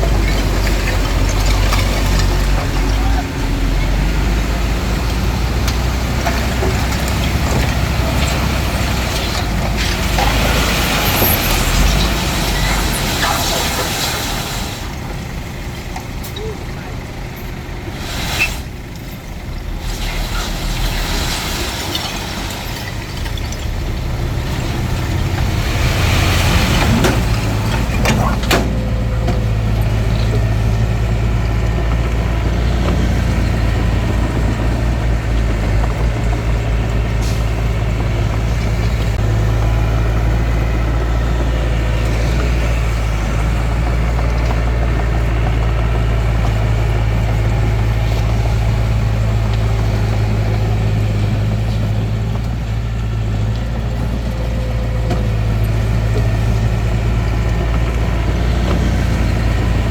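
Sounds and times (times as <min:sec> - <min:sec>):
diesel engine under load: 0:00.0 - 0:59.9
hiss: 0:09.8 - 0:14.9, 0:17.9 - 0:18.8.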